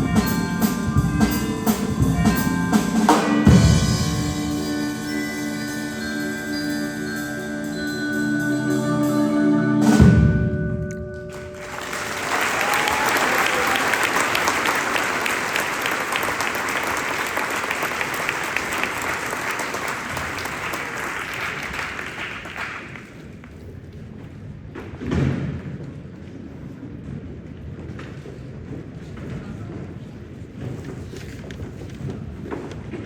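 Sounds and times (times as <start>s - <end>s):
concert band held chord: 0.0s - 5.5s, 11.3s - 21.8s
mallet percussion: 0.0s - 11.8s
audience applauding: 11.3s - 23.2s.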